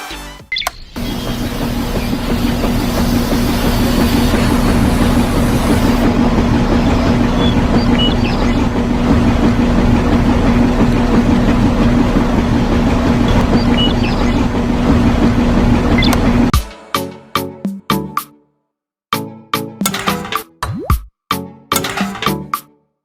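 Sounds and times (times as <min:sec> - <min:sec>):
motor humming: 0:00.5 - 0:16.5.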